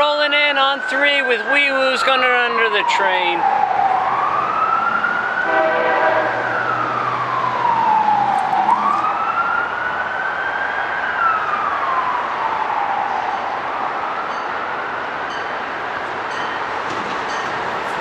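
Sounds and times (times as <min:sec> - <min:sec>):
emergency siren wailing: 0:00.0 - 0:18.0
multi-tone horn chord: 0:05.4 - 0:06.5.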